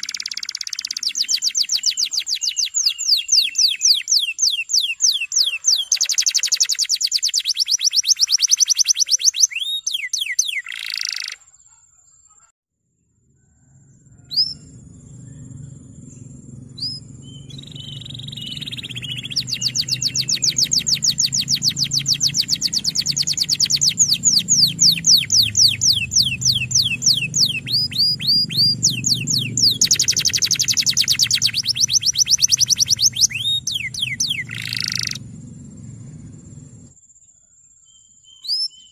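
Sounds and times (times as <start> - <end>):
canary singing trills: 0.0 - 12.5, 13.5 - 36.9, 37.8 - 38.9
low steady hum: 13.2 - 36.9.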